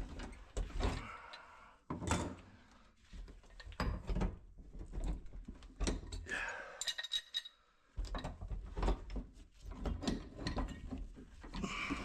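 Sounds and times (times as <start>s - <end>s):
wrench clanking on metal pipe fittings: 6.8s - 7.6s.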